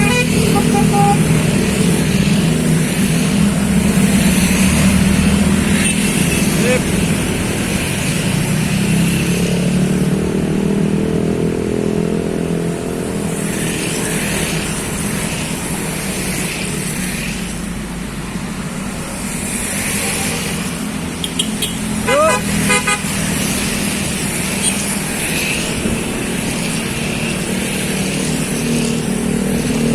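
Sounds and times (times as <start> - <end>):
vehicle engine running: 0.0 - 7.7
tyre and road noise: 0.0 - 29.9.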